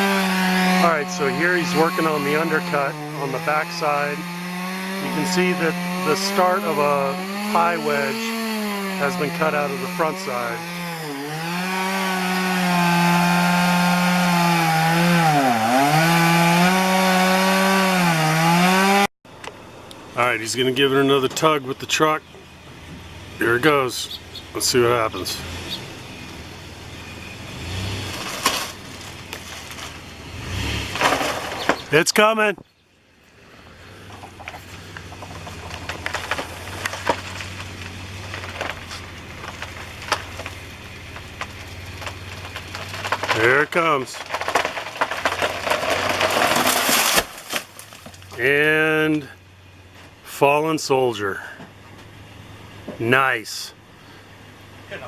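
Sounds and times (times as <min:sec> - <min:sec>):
truck engine running: 0:00.0 - 0:17.9, 0:19.3 - 0:55.0
chainsaw cutting wood: 0:00.0 - 0:19.1, 0:27.5 - 0:32.1, 0:34.0 - 0:48.6
wood cracking and snapping: 0:00.0 - 0:19.6, 0:28.1 - 0:32.0, 0:34.1 - 0:48.4.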